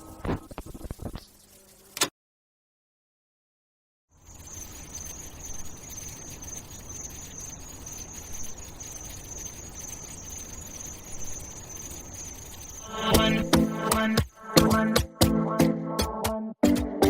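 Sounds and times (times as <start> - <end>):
high-pitched chirring: 4.2 - 15.0.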